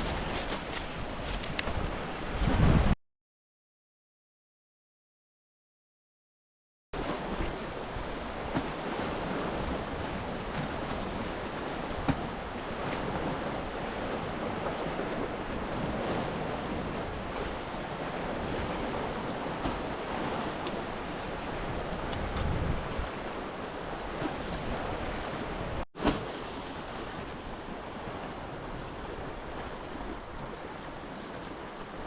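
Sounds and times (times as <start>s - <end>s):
wind: 0.0s - 3.0s, 7.0s - 32.0s
waves rushing: 7.0s - 32.0s.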